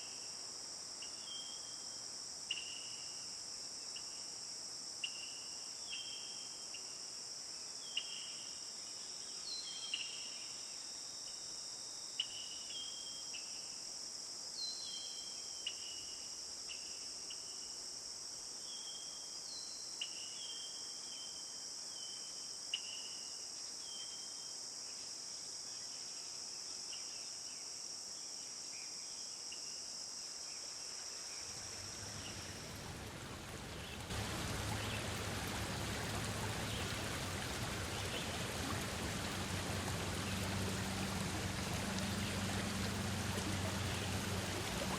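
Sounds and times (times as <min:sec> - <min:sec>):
high-pitched insect chorus: 0:00.0 - 0:44.9
running water: 0:31.4 - 0:44.9.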